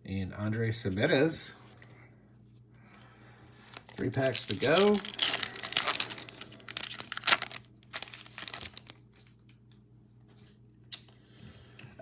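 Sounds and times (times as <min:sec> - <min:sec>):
foil wrapper tearing and crinkling: 0:03.6 - 0:09.5.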